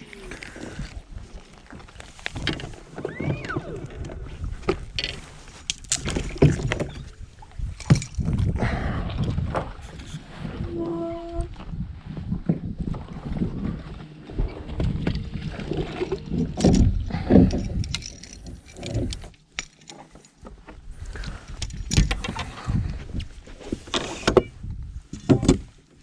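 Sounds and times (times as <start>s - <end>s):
knocks and clatter on boat: 5.9s - 19.4s, 21.6s - 23.1s, 23.8s - 25.8s.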